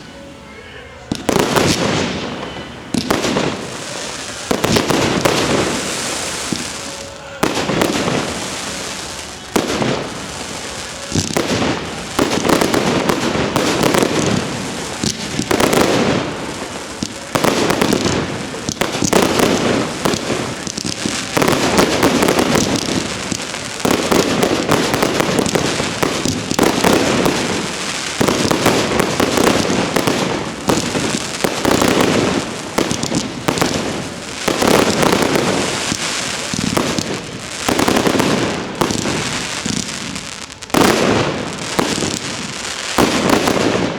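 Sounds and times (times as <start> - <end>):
fireworks crackling and banging: 0.0 - 43.9.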